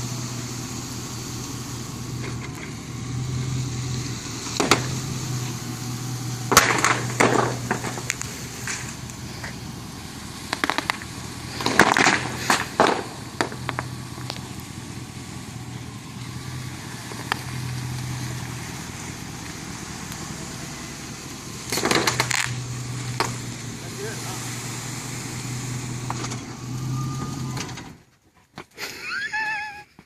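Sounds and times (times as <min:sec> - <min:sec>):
truck engine humming: 0:00.0 - 0:28.2
bubble wrap popping: 0:10.5 - 0:14.5.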